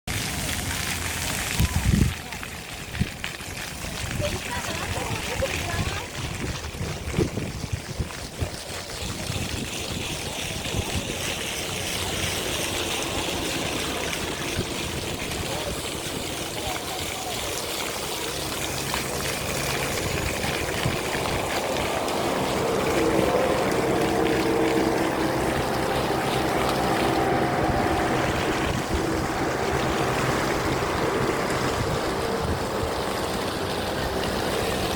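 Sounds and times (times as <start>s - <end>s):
water fountain splashing: 0.0s - 34.9s
wind rumble on microphone: 0.1s - 34.9s
low hum: 17.5s - 34.9s.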